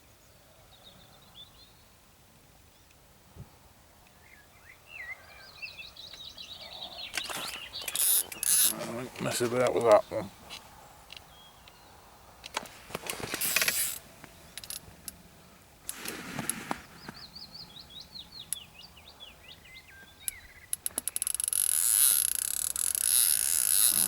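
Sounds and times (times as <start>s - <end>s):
small bird chirping: 4.1s - 10.3s, 16.8s - 24.0s.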